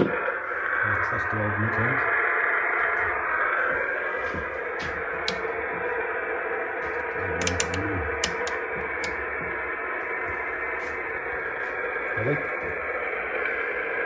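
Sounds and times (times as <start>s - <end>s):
radio static hissing: 0.0s - 14.0s
sharp clicks: 4.9s - 5.7s, 6.9s - 10.4s.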